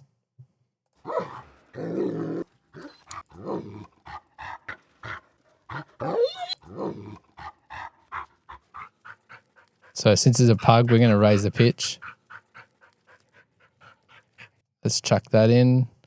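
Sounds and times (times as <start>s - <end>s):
dog whining: 1.0s - 14.5s
dog panting: 2.7s - 14.6s
throaty vocal noises: 3.0s - 12.8s.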